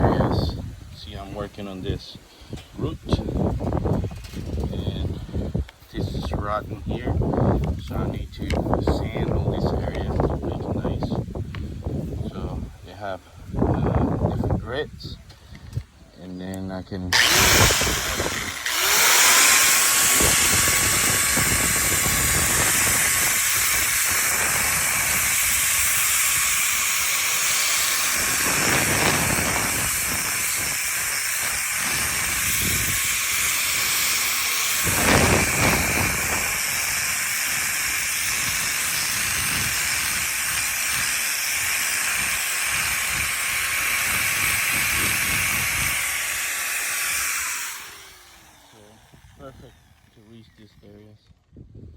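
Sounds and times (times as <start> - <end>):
power tool high whine: 17.1 - 51.0
abrasive sanding wood: 17.2 - 50.6.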